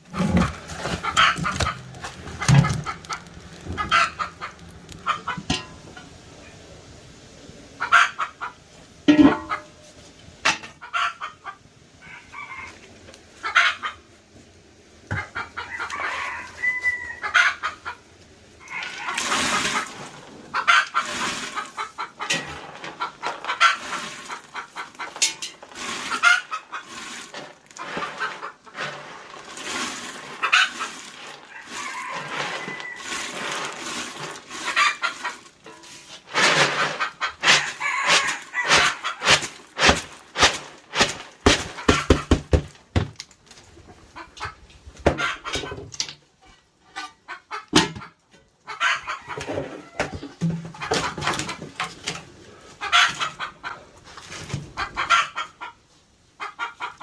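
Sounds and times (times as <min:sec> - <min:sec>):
rustling: 0:00.0 - 0:05.8, 0:18.7 - 0:45.3
chickens clucking: 0:00.0 - 0:06.6, 0:07.6 - 0:14.4, 0:15.0 - 0:42.6, 0:43.6 - 0:57.0
rooster crowing: 0:15.6 - 0:17.4, 0:31.5 - 0:33.4, 0:37.4 - 0:39.0.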